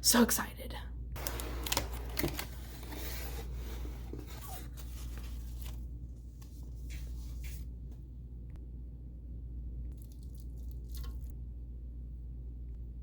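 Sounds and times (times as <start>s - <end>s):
low steady hum: 0.0s - 13.0s
packaging rustling and scraping: 1.2s - 7.6s.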